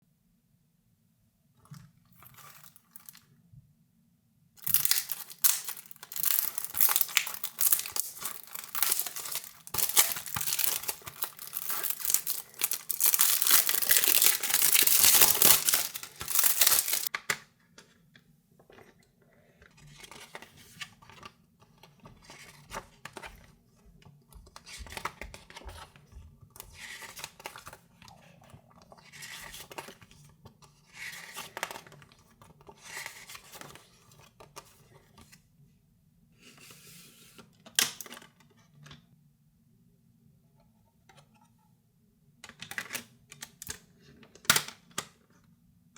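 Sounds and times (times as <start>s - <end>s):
shrink-wrap tearing and crinkling: 4.6s - 17.1s
cd packaging clicks and rustles: 4.6s - 17.4s.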